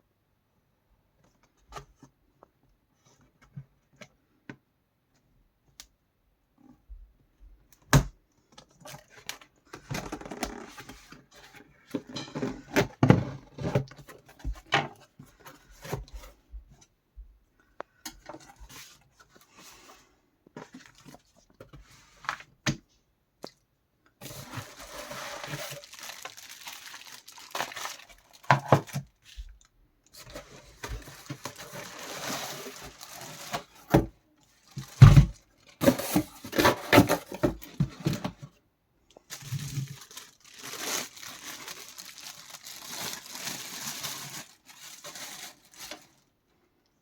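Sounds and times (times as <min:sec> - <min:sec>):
packaging rustling and scraping: 0:24.2 - 0:29.3, 0:30.2 - 0:38.5, 0:39.2 - 0:46.3.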